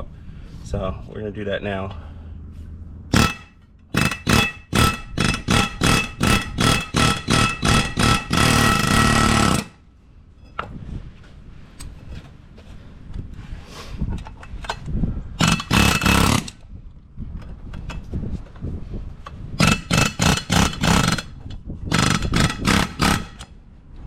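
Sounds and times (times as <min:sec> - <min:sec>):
pneumatic air hammer rattling: 0:03.1 - 0:09.8, 0:14.1 - 0:16.6, 0:19.6 - 0:23.6.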